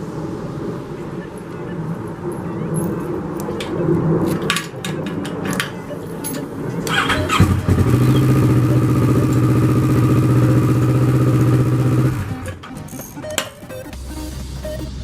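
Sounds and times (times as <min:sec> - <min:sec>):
motorcycle engine starting and idling: 0:06.8 - 0:12.8.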